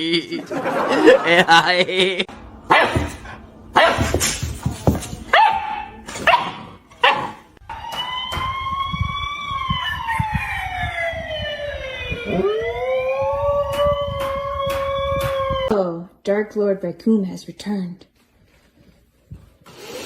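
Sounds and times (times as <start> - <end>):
dog barking sharply: 2.7 - 3.2, 3.8 - 4.2, 5.3 - 7.4
long rising and falling wail: 7.7 - 15.7.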